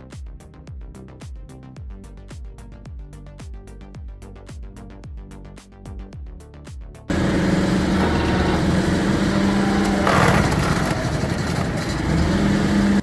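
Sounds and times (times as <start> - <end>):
machine engine humming: 7.1 - 13.0.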